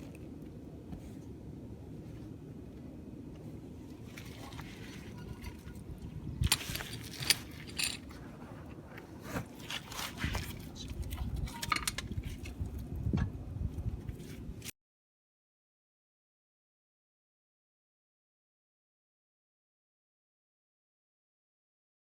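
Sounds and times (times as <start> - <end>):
steady low rumble: 0.0 - 14.7
metal clinks and scrapes: 4.5 - 8.4, 11.2 - 12.6.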